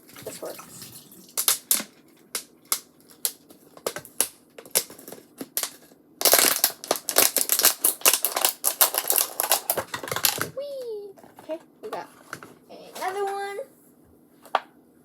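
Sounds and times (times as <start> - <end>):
plastic crackling and crunching: 0.0 - 10.6.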